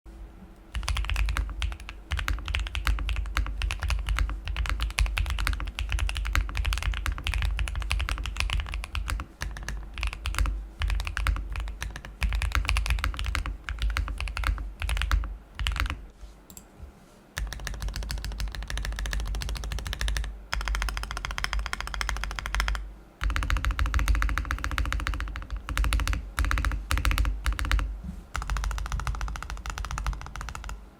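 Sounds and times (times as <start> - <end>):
mechanical keyboard typing: 0.7 - 16.6, 17.4 - 30.8.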